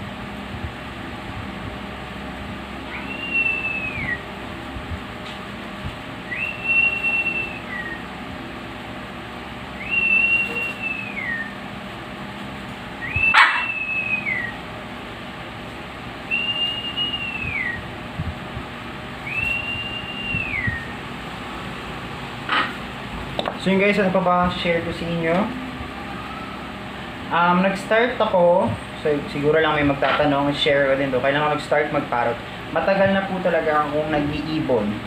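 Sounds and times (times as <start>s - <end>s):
parrot whistling: 2.9s - 4.3s, 6.2s - 8.1s, 9.8s - 11.6s, 13.0s - 14.6s, 16.3s - 17.9s, 19.2s - 21.0s, 25.7s - 26.8s.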